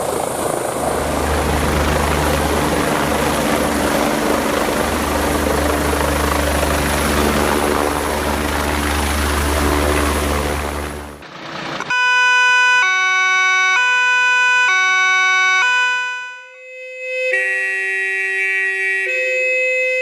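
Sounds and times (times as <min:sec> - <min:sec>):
helicopter engine and rotors: 0:00.0 - 0:11.9
two-tone siren: 0:11.9 - 0:20.0.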